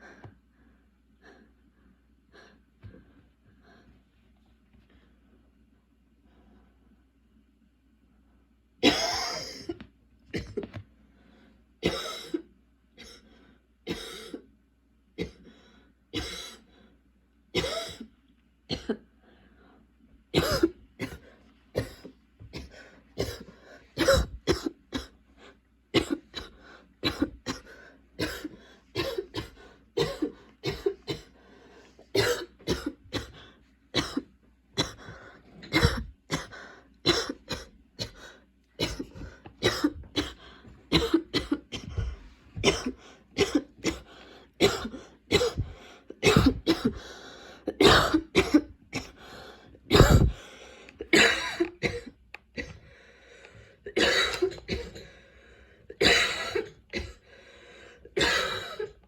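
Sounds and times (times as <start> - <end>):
girl coughing: 8.8 - 9.8, 17.6 - 18.0, 20.4 - 21.2, 21.8 - 25.2, 26.0 - 31.3, 32.1 - 33.4, 34.0 - 38.2, 38.8 - 47.0, 47.7 - 49.2, 49.9 - 50.4, 51.1 - 52.8, 53.9 - 55.0, 56.0 - 57.2, 58.2 - 59.0.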